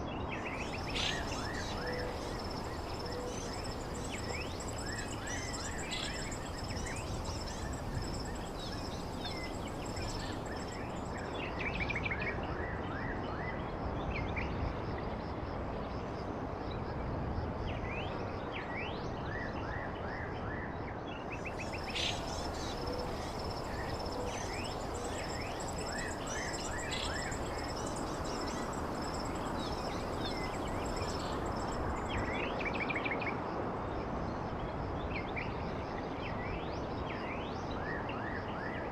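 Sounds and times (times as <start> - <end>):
background hiss: 0.4 - 11.5, 21.4 - 32.8
insect trill: 0.4 - 11.8, 21.4 - 33.0
birds chirping: 0.6 - 11.1, 21.5 - 32.2.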